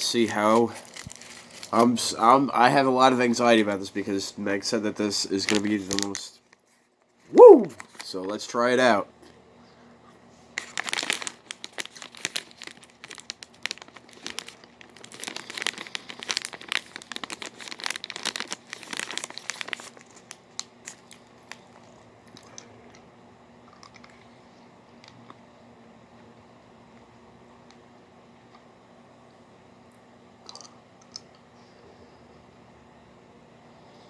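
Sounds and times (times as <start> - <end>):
packaging crinkling: 0.2 - 2.0, 5.3 - 6.3, 10.6 - 22.6.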